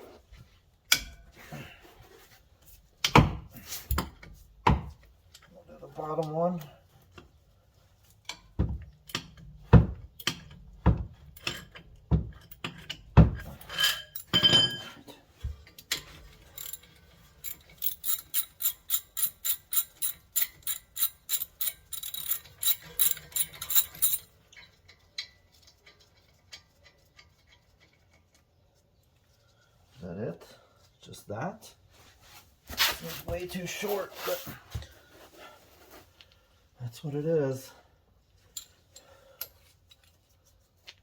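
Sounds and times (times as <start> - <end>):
socket ratchet clicking: 17.5 - 24.2.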